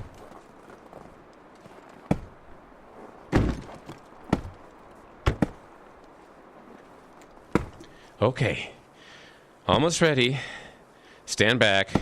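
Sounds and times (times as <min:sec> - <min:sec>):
axe chopping into tree trunk: 0:02.0 - 0:02.3, 0:03.3 - 0:04.6, 0:05.2 - 0:05.6, 0:07.5 - 0:07.8.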